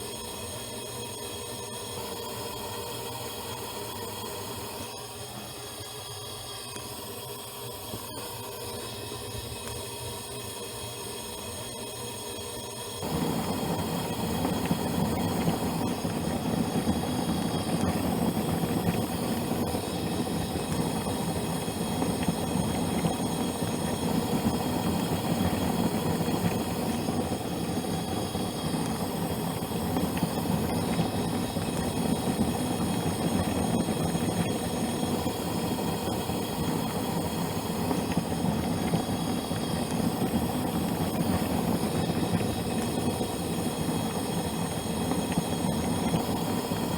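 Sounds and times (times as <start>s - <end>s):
water boiling hard: 13.0s - 46.9s.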